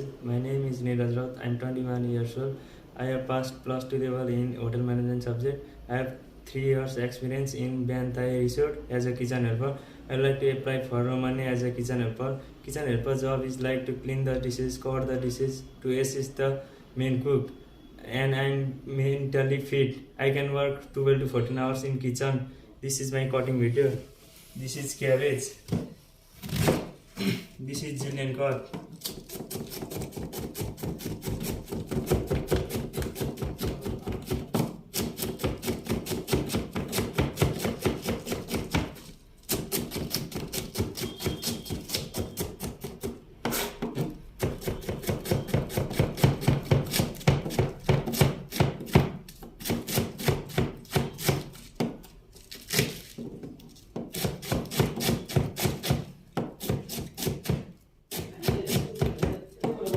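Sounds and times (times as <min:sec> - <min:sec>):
knife chopping cabbage on board: 0:25.7 - 0:27.0, 0:28.0 - 0:52.1, 0:52.7 - 0:59.9.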